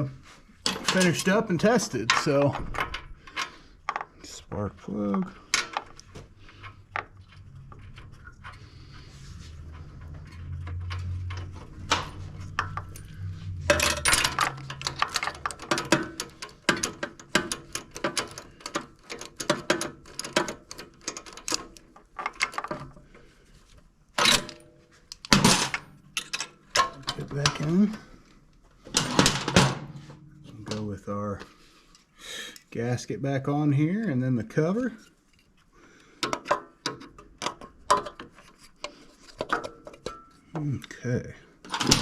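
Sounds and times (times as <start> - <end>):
low steady hum: 4.2 - 21.6, 24.4 - 32.0.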